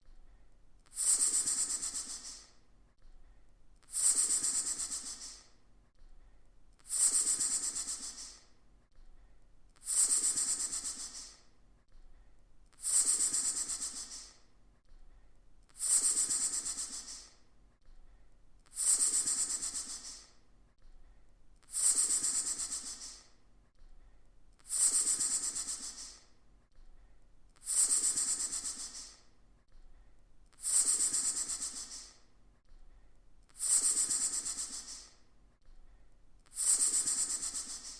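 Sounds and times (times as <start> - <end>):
snake hissing: 0.9 - 2.4, 3.9 - 5.4, 6.9 - 8.4, 9.8 - 11.3, 15.8 - 17.2, 24.7 - 26.2, 27.6 - 29.2, 30.6 - 32.2, 33.6 - 35.1, 36.5 - 37.9.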